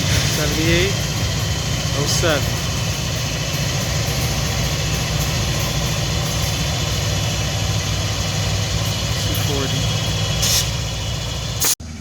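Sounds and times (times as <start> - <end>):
diesel locomotive engine running: 0.0 - 12.0.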